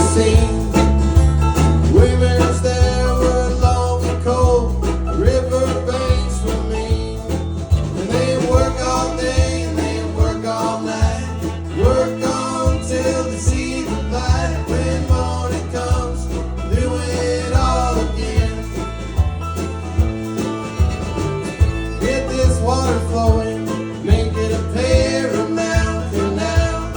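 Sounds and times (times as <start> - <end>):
plucked guitar: 0.0 - 26.9
sliding lead guitar line: 0.0 - 26.9
steady bass: 0.0 - 26.9.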